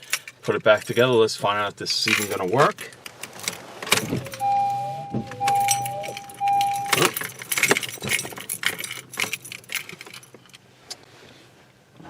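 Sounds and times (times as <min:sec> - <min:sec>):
car keys jangling: 0:02.0 - 0:10.7
long electronic beeps: 0:04.2 - 0:07.1
clicks and rattling: 0:05.5 - 0:10.6.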